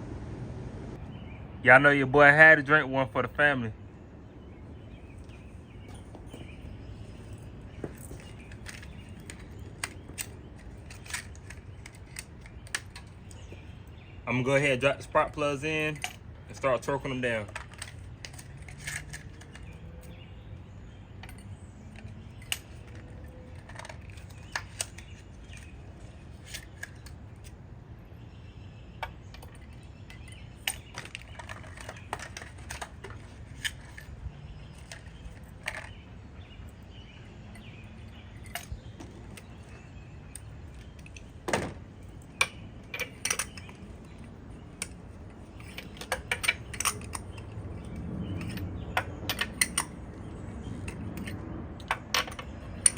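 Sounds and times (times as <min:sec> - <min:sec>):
metallic socket clicks and clinks: 0:42.3 - 0:52.9.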